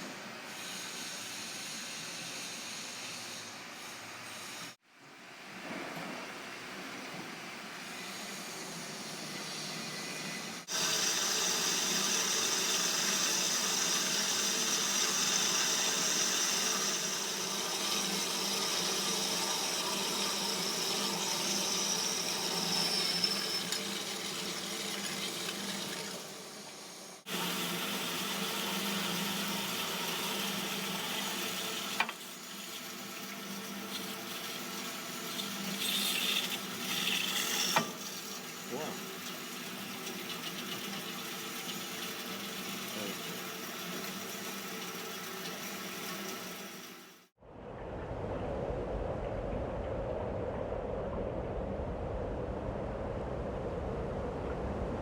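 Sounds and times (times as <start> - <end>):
bandsaw machine running: 10.6 - 26.6.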